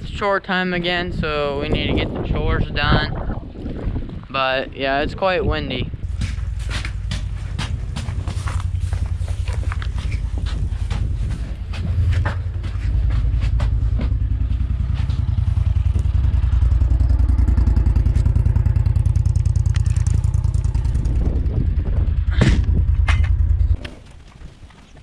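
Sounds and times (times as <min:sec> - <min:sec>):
farm machine engine running: 0:05.7 - 0:25.0.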